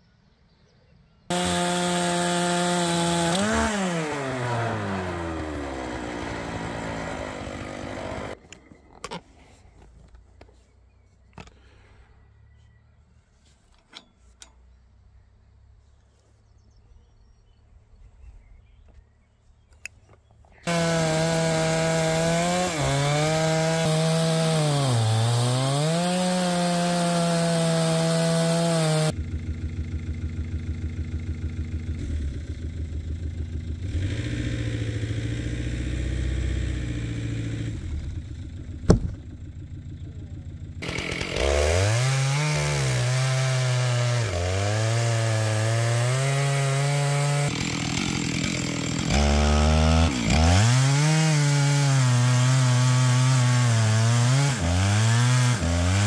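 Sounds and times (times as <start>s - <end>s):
chainsaw cutting log: 1.3s - 8.4s, 20.6s - 32.3s, 33.8s - 39.3s, 40.8s - 56.0s.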